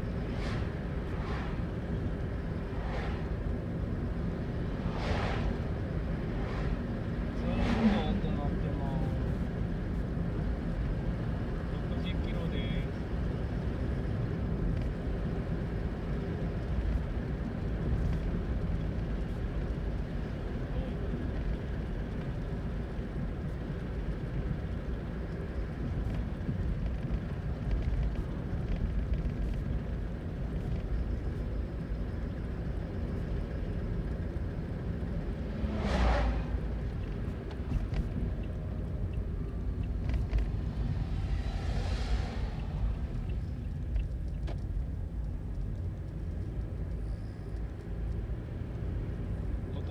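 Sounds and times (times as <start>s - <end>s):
whooshing: 4.8s - 5.6s, 35.5s - 36.6s, 40.4s - 43.8s
car cabin rumble: 16.1s - 47.0s.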